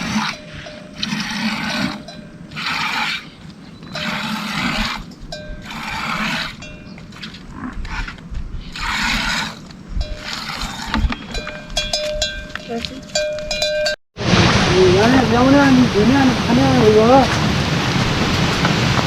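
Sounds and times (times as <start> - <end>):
rasping scraping strokes: 0.0 - 12.9.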